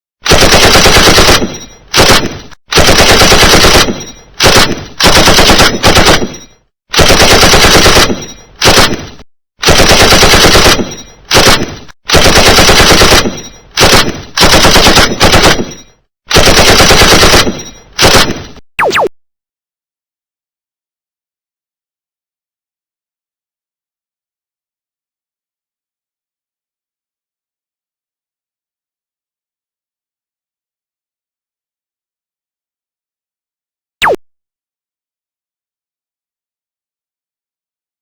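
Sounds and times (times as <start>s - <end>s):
automatic gunfire bursts: 0.3s - 19.1s.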